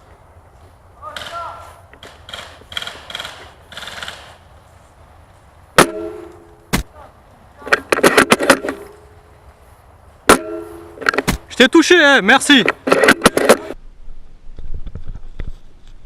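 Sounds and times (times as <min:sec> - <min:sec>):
airsoft gun shots: 0:05.8 - 0:06.9.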